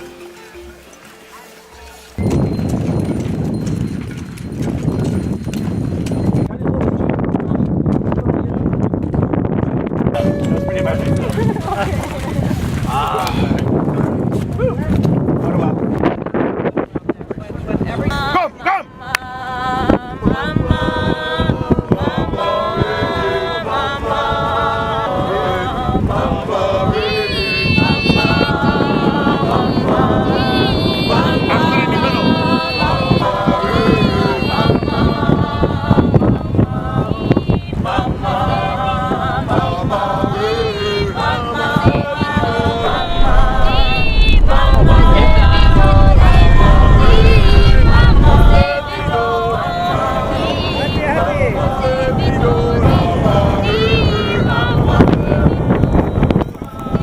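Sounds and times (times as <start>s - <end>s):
voices singing together: 17.8s - 57.0s
low rumbling noise: 42.0s - 50.4s.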